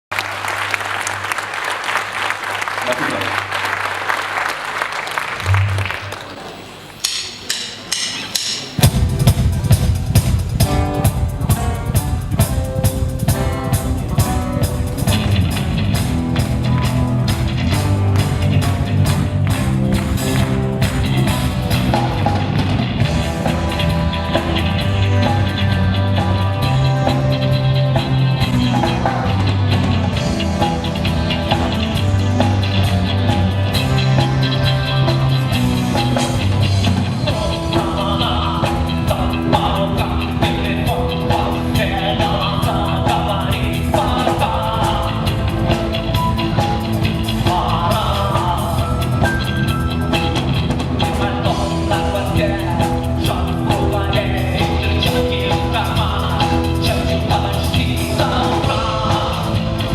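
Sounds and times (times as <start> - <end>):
drum hits: 7.0 - 25.3
rock band playing: 7.0 - 59.9
low bass line: 8.8 - 59.9.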